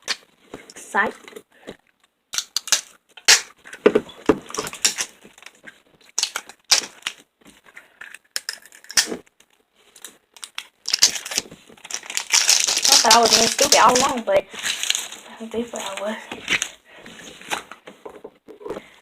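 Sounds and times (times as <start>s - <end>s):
plastic packaging tearing and crinkling: 2.4s - 3.8s, 4.5s - 7.2s, 8.2s - 16.8s
slime crackling: 10.5s - 16.8s.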